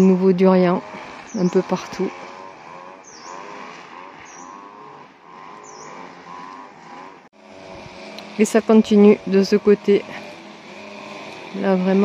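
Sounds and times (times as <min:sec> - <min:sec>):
distant engine revving: 0:00.0 - 0:12.0
bird's high dipping call: 0:03.0 - 0:04.8, 0:05.4 - 0:06.5.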